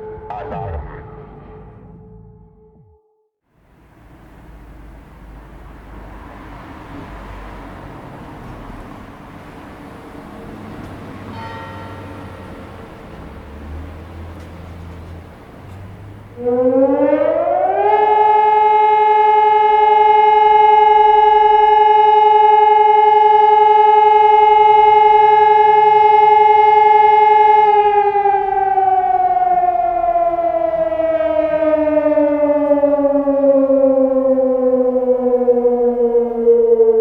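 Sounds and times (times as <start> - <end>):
electronic siren tone: 0.0 - 3.0, 16.4 - 37.0.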